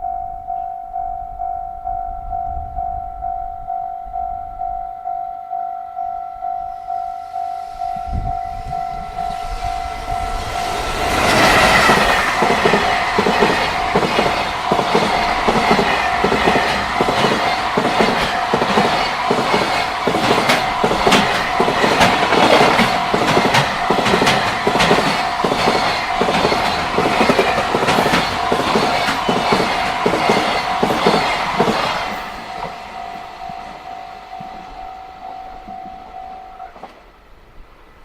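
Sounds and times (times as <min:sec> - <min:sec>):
crossing bell electronic ding: 0:00.0 - 0:10.9, 0:32.2 - 0:36.8
train wheels clacking over rail joints: 0:10.6 - 0:32.9.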